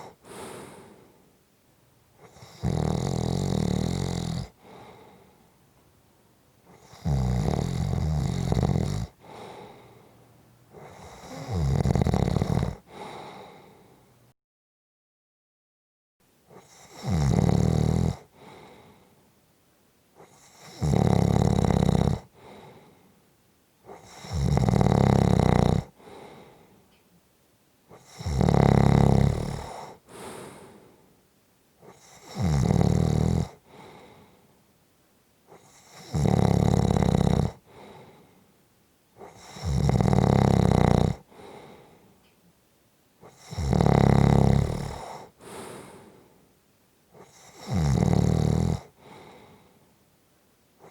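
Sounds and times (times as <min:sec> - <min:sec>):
person snoring: 0:00.0 - 0:01.2, 0:02.2 - 0:05.4, 0:06.7 - 0:10.0, 0:10.7 - 0:14.0, 0:16.5 - 0:19.0, 0:20.2 - 0:23.0, 0:23.9 - 0:26.7, 0:27.9 - 0:31.0, 0:31.8 - 0:34.3, 0:35.5 - 0:38.3, 0:39.2 - 0:42.0, 0:43.2 - 0:46.4, 0:47.2 - 0:49.7
soft breath: 0:00.0 - 0:01.4, 0:04.5 - 0:05.6, 0:09.2 - 0:11.4, 0:12.8 - 0:14.2, 0:18.2 - 0:19.4, 0:22.3 - 0:23.2, 0:25.9 - 0:27.1, 0:29.6 - 0:31.2, 0:33.5 - 0:34.6, 0:37.6 - 0:38.6, 0:41.2 - 0:42.4, 0:44.9 - 0:47.6, 0:48.8 - 0:50.0.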